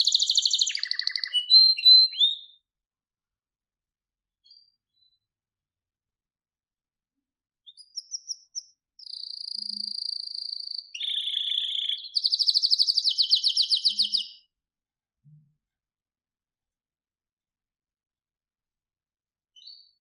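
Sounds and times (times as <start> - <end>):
canary singing: 0.0 - 2.6, 7.7 - 14.4.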